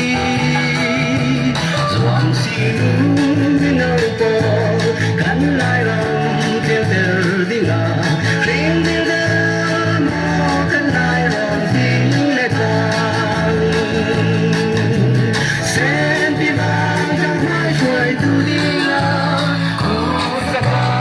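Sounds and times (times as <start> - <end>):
guitar: 0.0 - 21.0
person singing: 0.0 - 21.0
steady bass line: 0.0 - 21.0.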